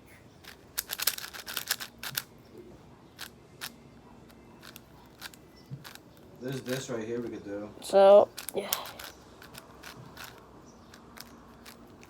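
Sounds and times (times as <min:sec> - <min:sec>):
plastic speed cube clicking: 0:00.4 - 0:02.3, 0:04.6 - 0:06.9, 0:08.2 - 0:12.0.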